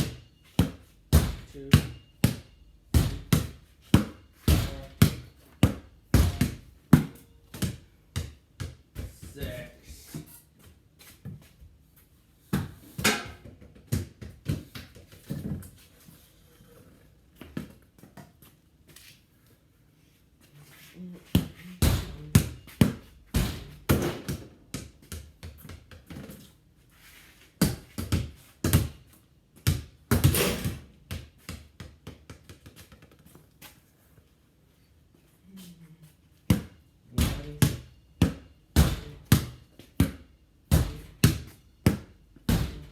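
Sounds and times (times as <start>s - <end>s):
basketball thudding off garage door: 1.1s - 8.3s, 21.8s - 24.5s, 29.7s - 31.2s, 36.5s - 42.9s.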